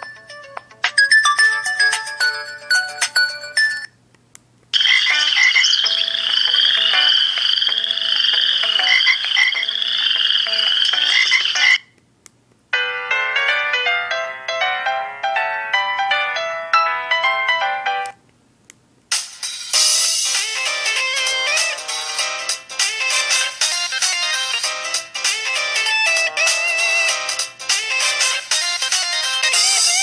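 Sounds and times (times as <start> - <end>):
melodic electronic ringtone: 0.0 - 4.0, 4.8 - 11.9, 12.8 - 18.1, 19.8 - 30.0
frog-like croaking ringtone: 4.8 - 11.9.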